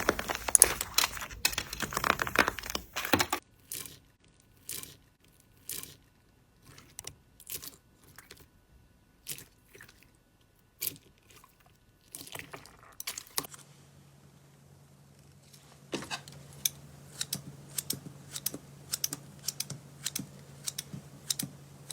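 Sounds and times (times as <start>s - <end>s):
low steady hum: 5.2s - 21.9s.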